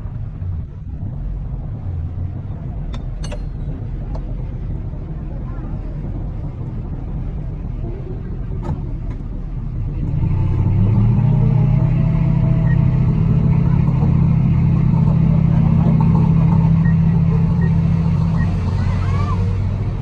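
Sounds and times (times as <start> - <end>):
heavy diesel engine revving: 8.9 - 20.0.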